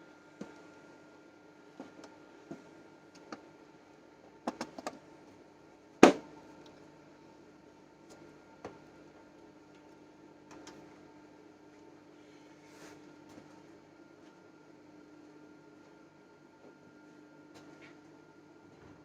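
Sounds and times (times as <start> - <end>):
steady hum: 0.0 - 19.0
loud sharp knock: 6.0 - 6.3.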